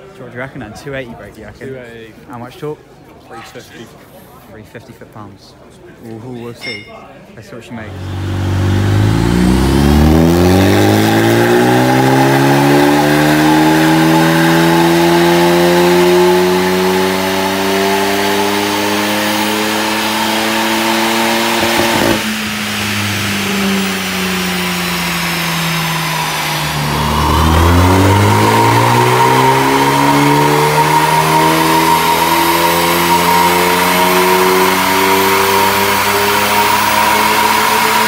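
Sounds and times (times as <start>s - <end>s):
car engine revving: 7.8s - 38.0s
exhaust crackle: 18.6s - 38.0s.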